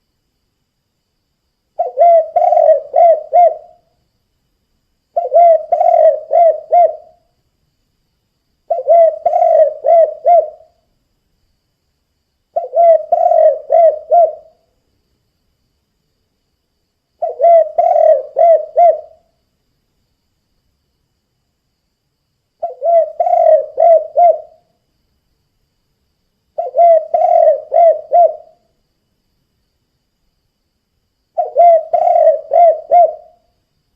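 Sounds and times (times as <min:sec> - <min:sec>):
dove cooing: 0:01.8 - 0:03.8, 0:05.2 - 0:07.2, 0:08.7 - 0:10.7, 0:12.6 - 0:14.6, 0:17.2 - 0:19.2, 0:22.6 - 0:24.7, 0:26.6 - 0:28.6, 0:31.4 - 0:33.4.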